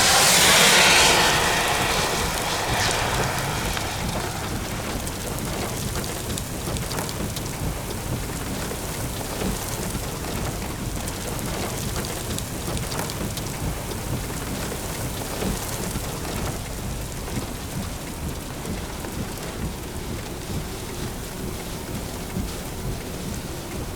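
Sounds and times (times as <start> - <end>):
low rumble: 0.0 - 6.8
rain pattering on a surface: 1.9 - 23.9.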